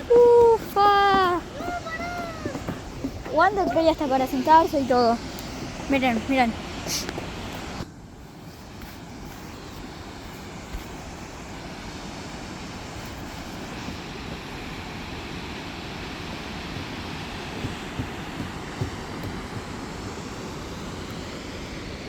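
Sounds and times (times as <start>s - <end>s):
distant waterfall roar: 0.0s - 22.0s.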